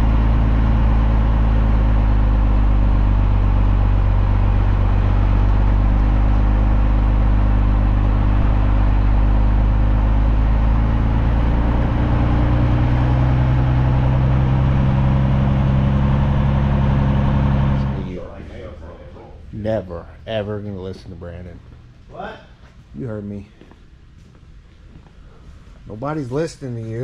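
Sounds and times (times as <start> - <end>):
diesel engine running: 0.0 - 18.7.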